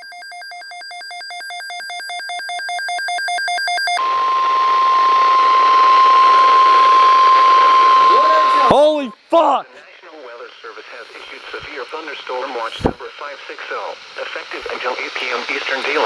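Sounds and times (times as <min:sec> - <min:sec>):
steady warning alarm tone: 0:00.0 - 0:09.6
radio hiss: 0:04.0 - 0:16.0.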